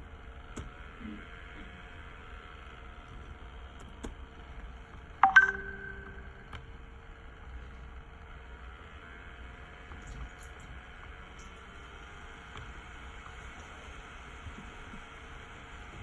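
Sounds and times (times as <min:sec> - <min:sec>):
electronic notification chime: 0:05.2 - 0:06.6.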